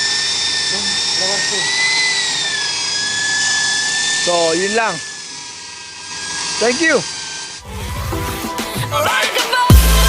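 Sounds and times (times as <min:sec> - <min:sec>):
electronic music with a beat: 0:07.7 - 0:10.0
heavy deep bass: 0:09.7 - 0:10.0.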